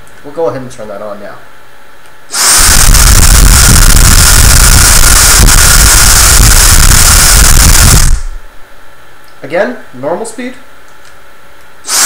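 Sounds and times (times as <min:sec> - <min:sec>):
vacuum cleaner air rush: 0:02.3 - 0:08.4
motor whine: 0:02.3 - 0:08.5.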